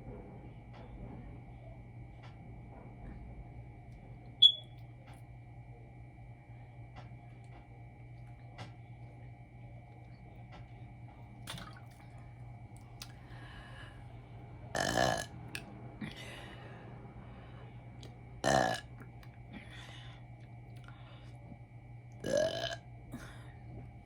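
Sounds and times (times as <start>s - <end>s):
woman belching: 14.7s - 15.3s, 18.4s - 19.0s, 22.2s - 22.8s.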